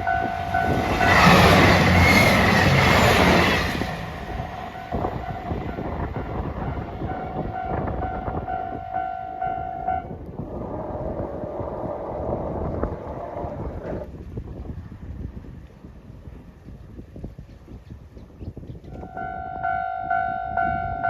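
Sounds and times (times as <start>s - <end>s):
train rumbling: 0.0s - 15.2s.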